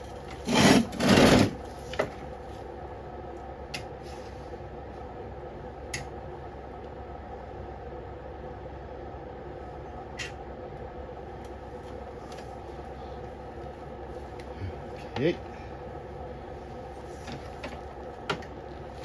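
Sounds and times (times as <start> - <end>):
snowblower housing scraping: 0.0 - 2.0
steady background hum: 0.0 - 19.0.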